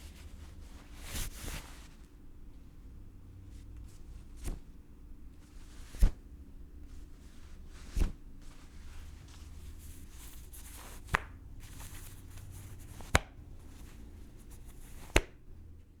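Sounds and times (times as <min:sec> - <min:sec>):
fabric rustling: 0:00.0 - 0:02.3, 0:03.5 - 0:15.6
cloth snapping: 0:04.4 - 0:04.7, 0:05.8 - 0:06.2, 0:07.8 - 0:15.5.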